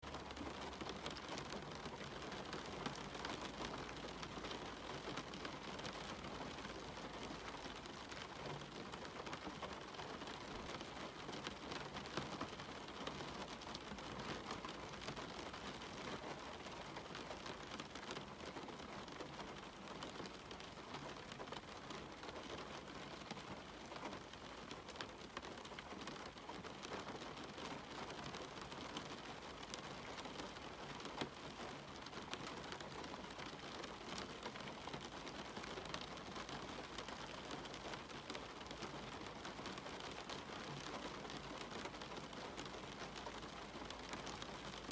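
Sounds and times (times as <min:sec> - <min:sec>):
steady rain falling: 0:00.0 - 0:44.9.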